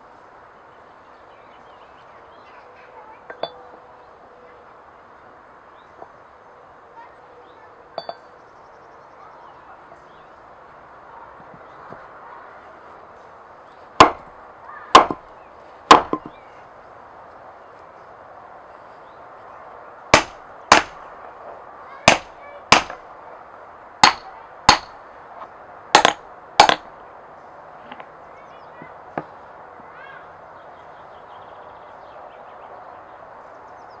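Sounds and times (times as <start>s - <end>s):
sharp loud striking blows: 14.0s - 14.3s, 14.9s - 15.2s, 20.1s - 21.0s, 22.1s - 23.0s, 24.0s - 25.0s, 26.0s - 26.9s.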